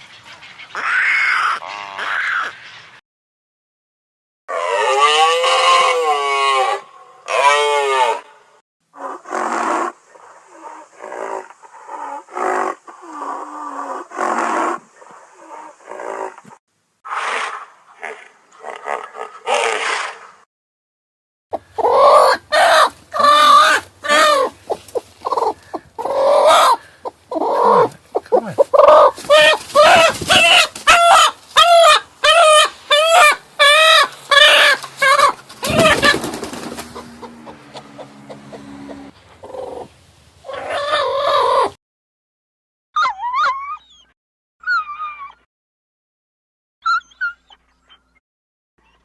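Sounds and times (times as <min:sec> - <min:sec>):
chickens clucking and squawking: 0:21.5 - 0:41.8.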